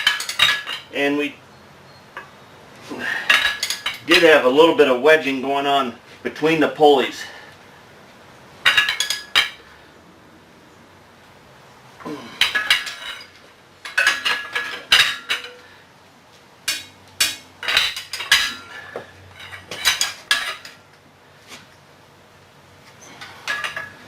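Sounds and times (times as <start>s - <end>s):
metal tools clanking together: 0.0s - 0.9s, 3.3s - 4.2s, 12.3s - 15.6s, 16.7s - 20.8s, 23.0s - 24.0s.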